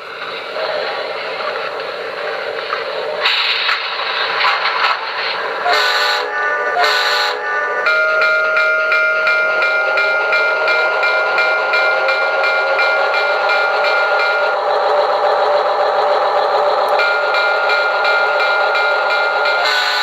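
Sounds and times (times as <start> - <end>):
locomotive bell ringing: 5.7 - 20.0.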